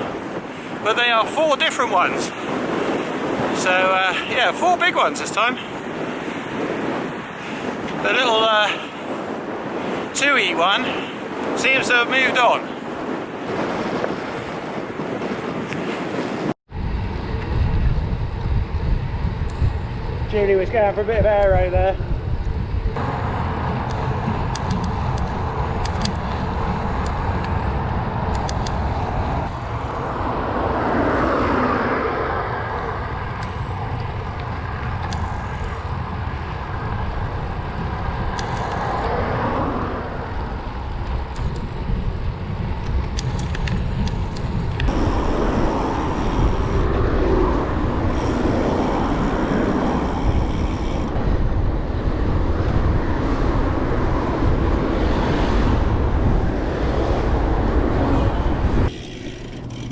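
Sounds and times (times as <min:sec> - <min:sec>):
rolling tyre rumble: 0:00.0 - 0:59.9
wind buffeting microphone: 0:00.0 - 0:59.9
bicycle rattles: 0:31.5 - 0:51.1, 0:56.1 - 0:59.9.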